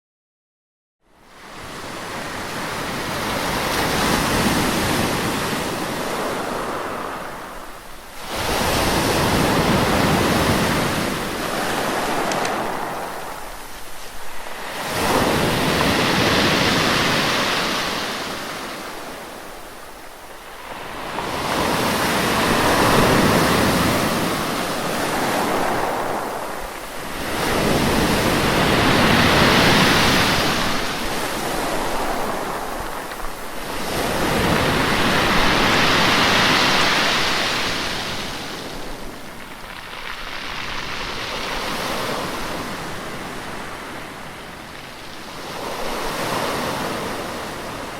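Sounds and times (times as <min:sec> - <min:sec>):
sea waves breaking: 0:01.4 - 0:47.9.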